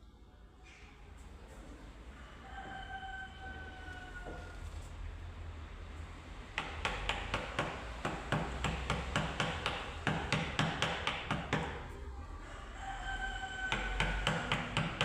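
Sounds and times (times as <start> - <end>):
mallet tapping chisel into wood: 6.6 - 11.9, 13.7 - 15.0.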